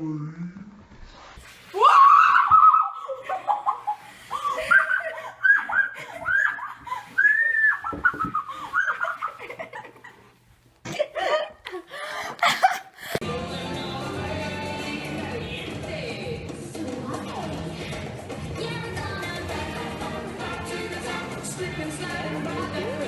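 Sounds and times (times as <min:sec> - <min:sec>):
girls laughing: 0:01.8 - 0:13.2.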